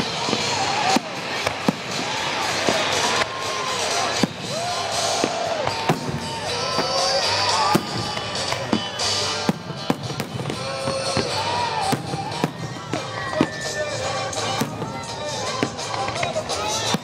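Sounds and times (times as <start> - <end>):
fireworks bursting with bangs: 0.0 - 17.0
music with melody: 3.6 - 17.0.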